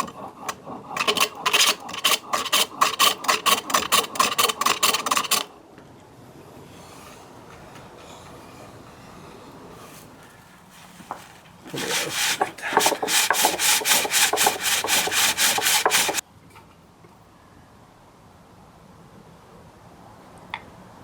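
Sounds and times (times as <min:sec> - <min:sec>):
pole lathe rasping wood: 0:00.0 - 0:05.5, 0:06.6 - 0:10.3, 0:11.1 - 0:16.2.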